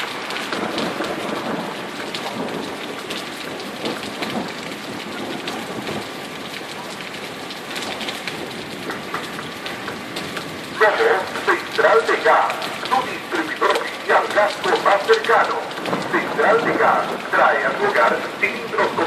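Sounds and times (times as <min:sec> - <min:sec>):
heavy rain pouring: 0:00.0 - 0:19.0.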